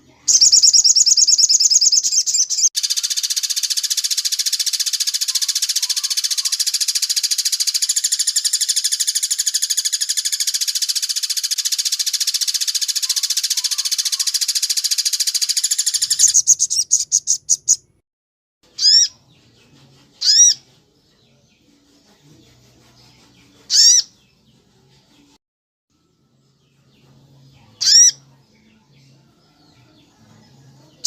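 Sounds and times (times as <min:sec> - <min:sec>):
songbird rattling trill: 0:00.3 - 0:17.8.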